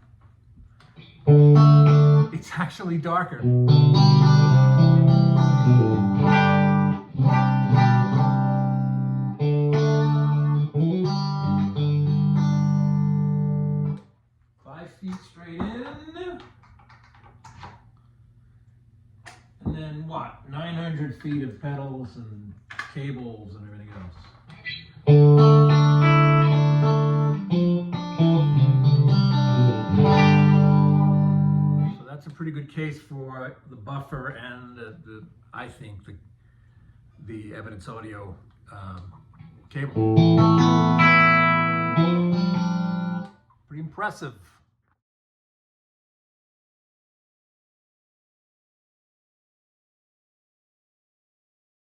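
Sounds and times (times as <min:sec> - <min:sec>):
clean electric guitar chords: 0:01.0 - 0:02.4, 0:03.4 - 0:14.0, 0:24.6 - 0:32.0, 0:39.8 - 0:43.3.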